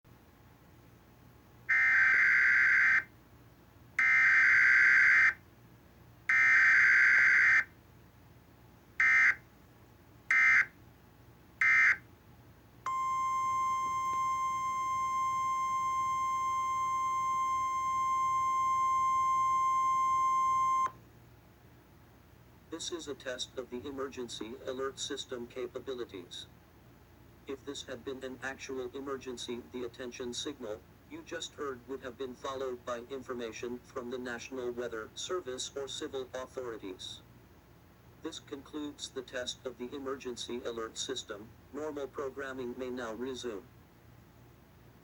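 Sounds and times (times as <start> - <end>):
steady single-pitch alert tone: 12.9 - 21.0.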